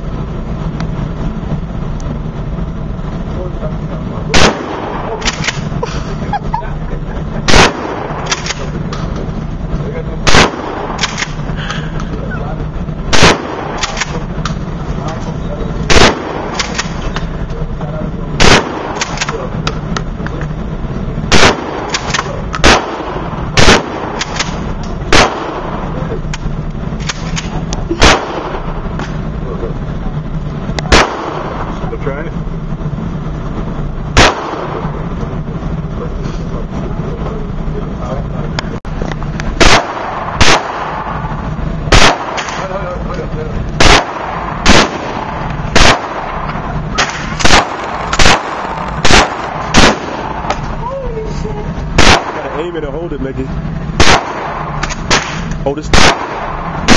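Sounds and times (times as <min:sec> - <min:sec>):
loud gunshots: 0:04.2 - 0:06.5, 0:07.2 - 0:09.2, 0:10.1 - 0:11.7, 0:12.9 - 0:15.1, 0:15.8 - 0:17.4, 0:18.3 - 0:19.9, 0:21.2 - 0:29.4, 0:30.8 - 0:32.0, 0:34.1 - 0:35.2, 0:39.5 - 0:43.1, 0:43.7 - 0:50.8, 0:51.9 - 0:53.0, 0:53.9 - 0:56.9
faint distant gun cracks: 0:54.0 - 0:56.9.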